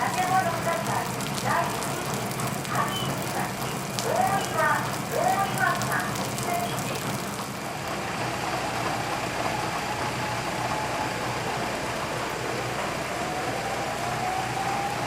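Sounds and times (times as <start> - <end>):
fire engine motor running: 0.0 - 15.0
siren: 8.9 - 15.0.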